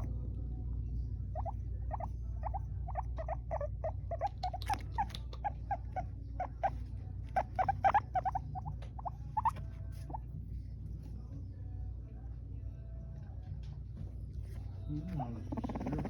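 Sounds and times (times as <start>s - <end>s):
guinea pig squeaking: 1.2s - 10.3s, 14.4s - 16.0s.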